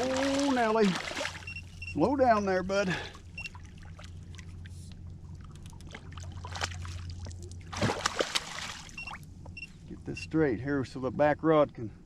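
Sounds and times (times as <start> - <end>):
fish splashing at surface: 0.0 - 1.5, 5.5 - 9.1
water splashing: 0.0 - 1.8, 2.8 - 9.2
steady low hum: 0.0 - 12.0.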